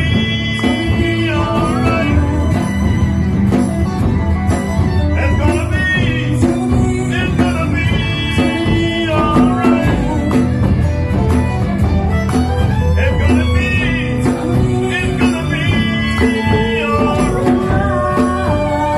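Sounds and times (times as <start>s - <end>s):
regular percussive beat: 0.0s - 18.9s
steady bass line: 0.0s - 18.9s.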